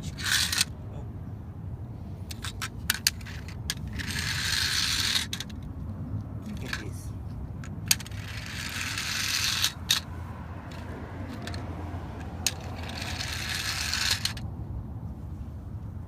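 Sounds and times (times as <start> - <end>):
toy rocks and trucks rattling: 0.0 - 0.7, 2.2 - 5.8, 6.4 - 10.1, 10.7 - 14.4.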